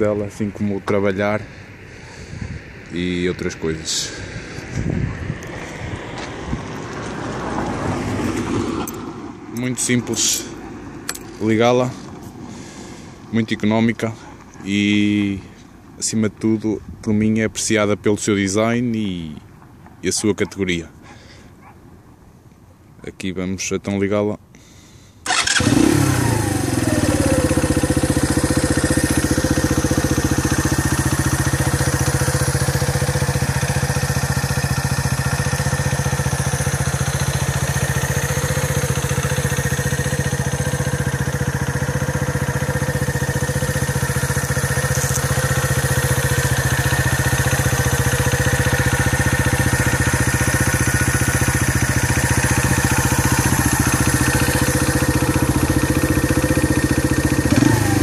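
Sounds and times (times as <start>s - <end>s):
motorcycle engine idling: 0.0s - 2.9s, 25.2s - 58.0s.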